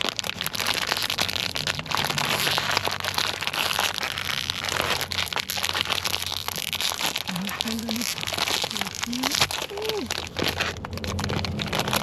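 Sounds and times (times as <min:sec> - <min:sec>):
paper wrapper crinkling: 0:00.0 - 0:12.0.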